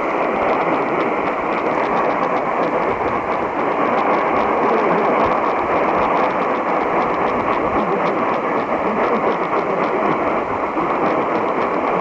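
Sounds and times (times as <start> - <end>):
radio static hiss: 4.0 - 6.4, 7.1 - 12.0.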